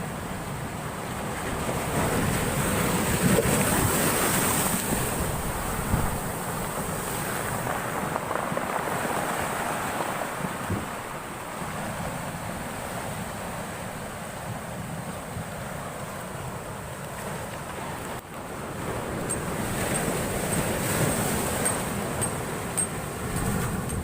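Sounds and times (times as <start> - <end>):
heavy surf breaking: 1.3 - 14.8, 17.2 - 24.0
wind buffeting microphone: 1.6 - 12.6, 18.8 - 24.0.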